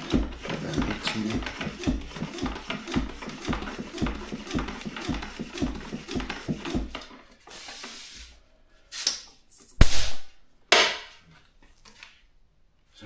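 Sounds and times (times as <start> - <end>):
tyre pump strokes: 0.0 - 8.3
air hissing: 7.5 - 10.1.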